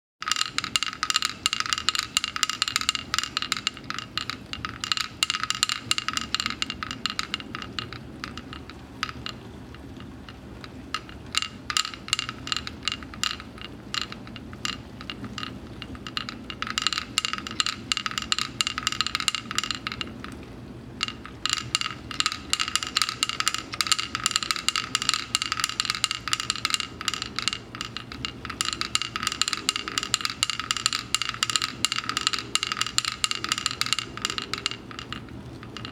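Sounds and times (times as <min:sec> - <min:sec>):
wooden toy clicking: 0:00.2 - 0:35.9.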